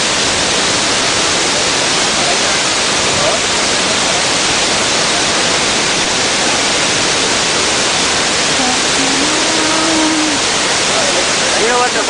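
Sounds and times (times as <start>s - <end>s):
waterfall and river rushing: 0.0s - 12.0s
faint voice: 2.1s - 5.8s, 8.6s - 12.0s.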